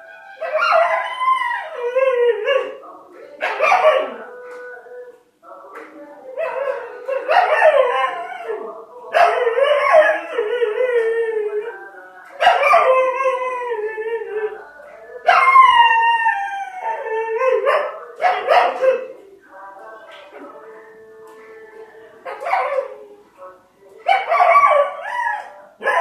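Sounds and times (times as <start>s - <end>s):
dog howling: 0.3s - 2.8s, 3.4s - 4.4s, 6.3s - 19.2s, 24.1s - 26.0s.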